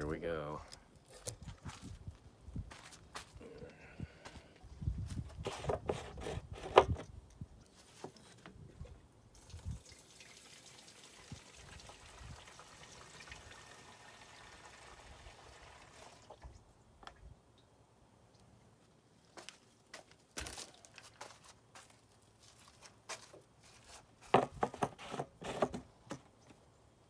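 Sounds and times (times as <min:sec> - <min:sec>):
gasoline pouring into tank: 0:09.4 - 0:16.5.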